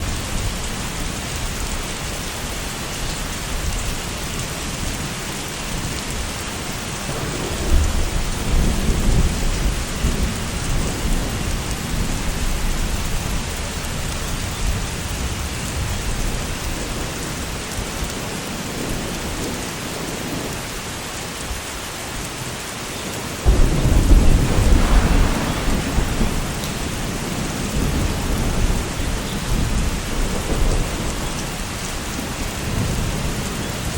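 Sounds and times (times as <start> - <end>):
steady rain falling: 0.0 - 33.9
thunder rumbling: 7.0 - 13.2, 23.4 - 33.2.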